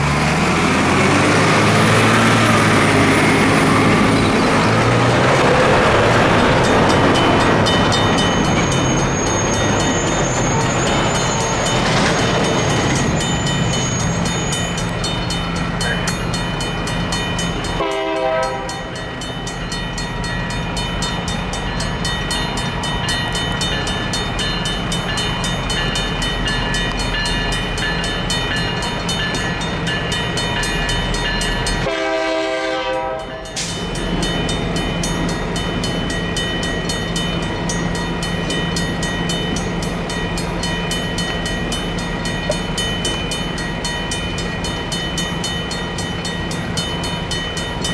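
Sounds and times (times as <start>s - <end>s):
crossing bell ringing: 0.0s - 47.9s
train rumbling past: 0.0s - 47.9s
train horn: 17.8s - 19.1s, 31.8s - 33.6s.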